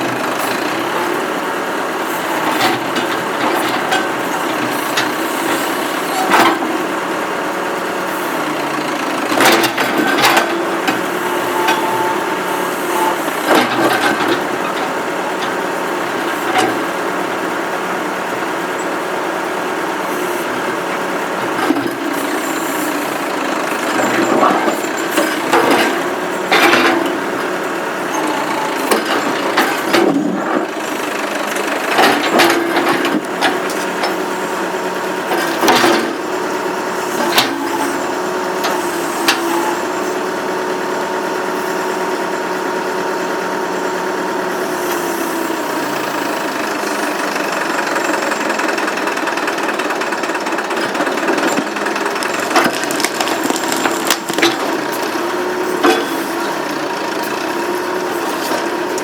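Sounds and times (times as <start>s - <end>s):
backhoe engine running: 0.0s - 59.0s
backhoe digging knocks and cracks: 50.8s - 55.1s.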